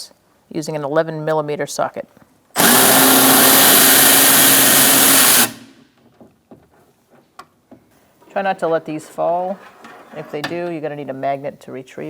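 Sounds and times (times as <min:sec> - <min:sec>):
cordless power tool running: 0:02.6 - 0:05.8.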